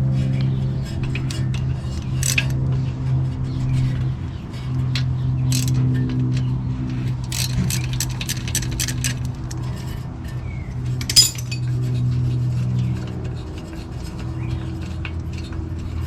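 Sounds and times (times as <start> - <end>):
steady low hum: 0.0 - 16.0
quick ratchet clicks: 5.5 - 5.8
sharp metallic clink: 11.0 - 11.6.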